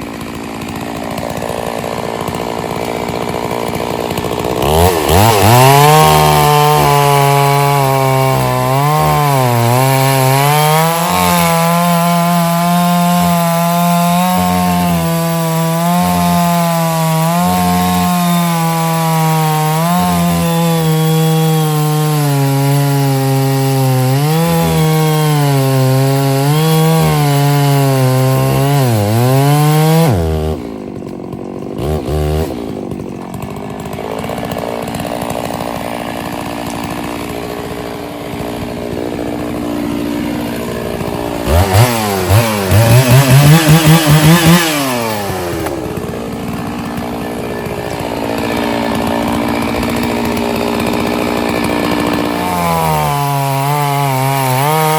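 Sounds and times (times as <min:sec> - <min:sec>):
chainsaw cutting wood: 0:00.0 - 0:54.9
chainsaw idling: 0:00.0 - 0:54.9.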